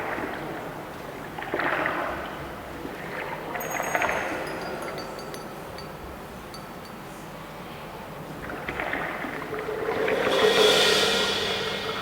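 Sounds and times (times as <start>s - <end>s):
high metallic chime strikes: 3.6s - 7.0s.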